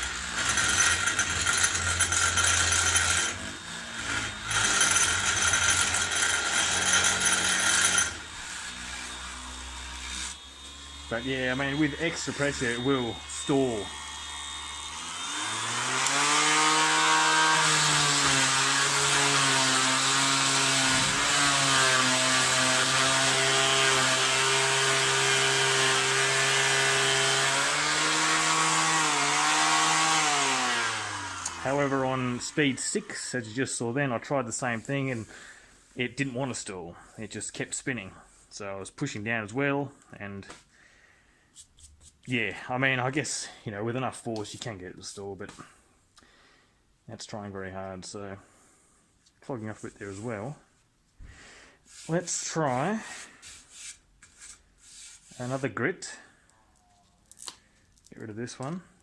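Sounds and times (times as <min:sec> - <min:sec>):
orbital sander on wood: 0:00.0 - 0:33.2.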